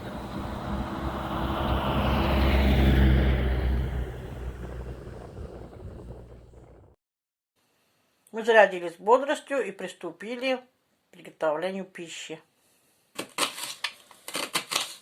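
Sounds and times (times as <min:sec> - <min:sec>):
vehicle engine and tyre noise passing: 0:00.0 - 0:07.0.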